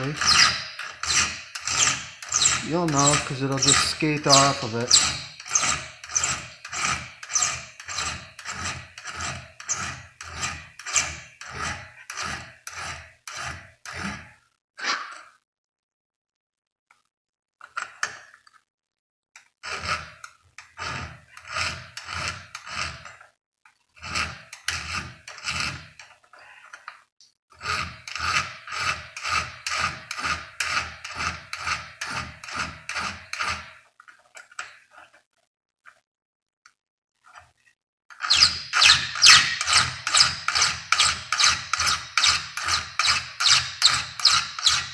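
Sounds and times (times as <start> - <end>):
flat file rasping on metal: 0.0 - 14.4, 19.6 - 23.2, 24.0 - 26.8, 27.5 - 33.8, 38.2 - 44.9.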